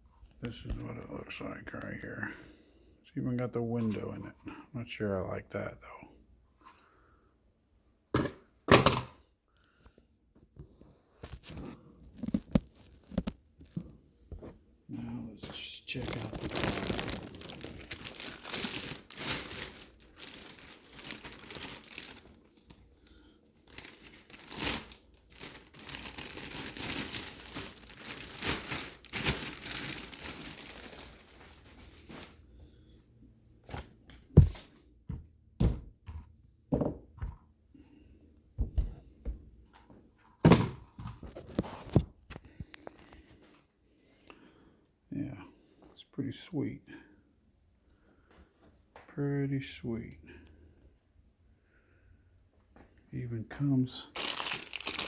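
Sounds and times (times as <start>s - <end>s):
packaging crinkling and rustling: 11.2s - 14.0s, 15.4s - 22.8s, 23.6s - 32.4s, 41.2s - 43.2s, 54.0s - 55.0s.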